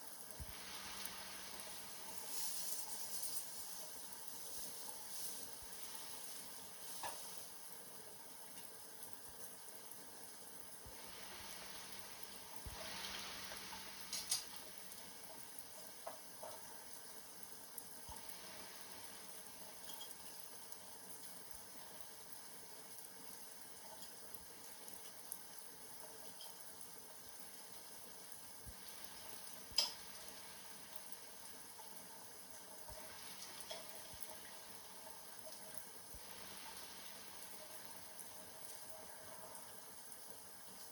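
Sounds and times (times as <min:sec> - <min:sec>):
rain hiss: 0:00.0 - 0:40.9
sharp drip-like clicks: 0:08.5 - 0:09.7, 0:11.7 - 0:27.0, 0:28.6 - 0:36.8.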